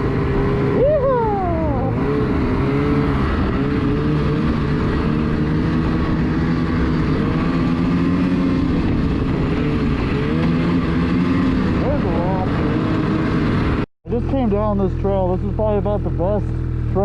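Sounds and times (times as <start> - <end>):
snowmobile engine running: 0.0 - 17.0.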